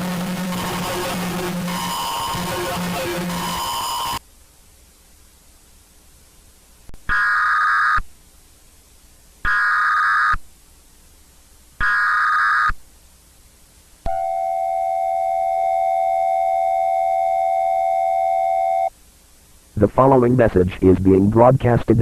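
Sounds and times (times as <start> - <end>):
buzzy data bursts: 0.0 - 4.2, 9.4 - 10.4
steady alert attention tone: 0.0 - 4.2.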